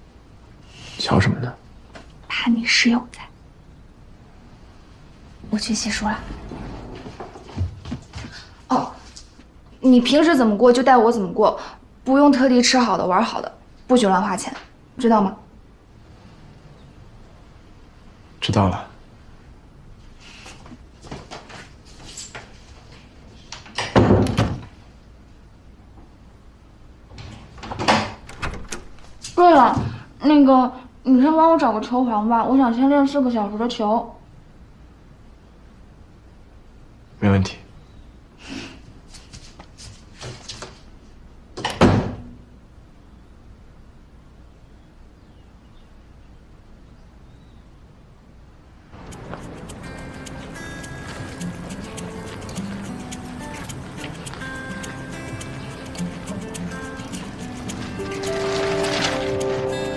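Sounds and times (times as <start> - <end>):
door knocks and clatters: 6.2 - 8.1, 27.3 - 29.0
door shutting with thud: 27.2 - 29.0, 41.6 - 42.3
door shutting with thump: 41.6 - 42.3.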